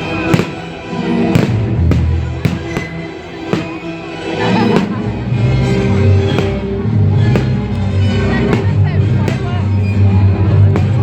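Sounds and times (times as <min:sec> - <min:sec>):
music with low sustained notes: 0:00.0 - 0:11.0
sharp crack: 0:00.3 - 0:04.0, 0:06.3 - 0:09.6.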